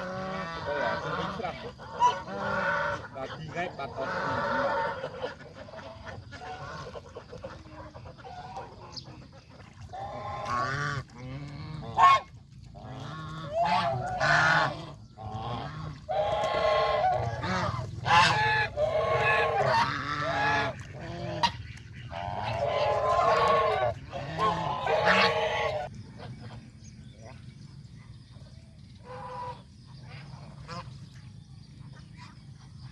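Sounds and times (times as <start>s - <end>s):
geese honking: 0.0s - 8.8s, 9.8s - 25.9s.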